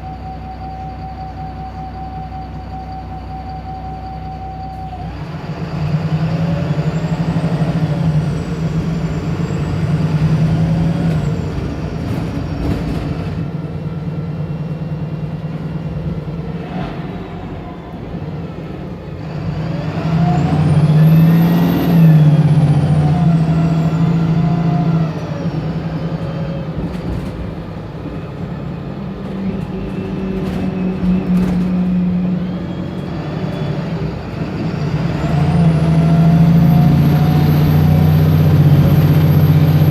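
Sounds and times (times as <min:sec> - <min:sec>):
high whistle: 0:00.0 - 0:05.2
diesel bus engine under load: 0:00.0 - 0:39.9.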